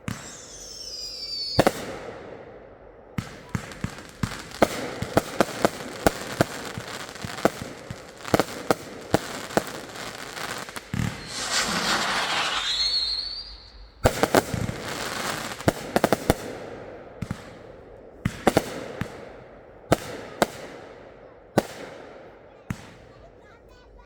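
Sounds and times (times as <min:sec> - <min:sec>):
firework whistle: 0:00.1 - 0:01.7, 0:11.0 - 0:14.2
firework bangs: 0:10.5 - 0:16.4
crackling hiss: 0:10.6 - 0:14.0.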